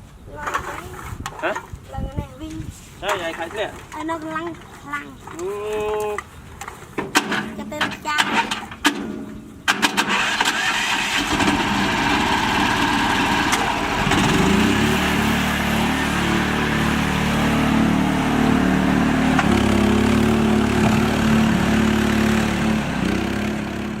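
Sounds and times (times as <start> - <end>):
tractor engine running: 7.2 - 24.0.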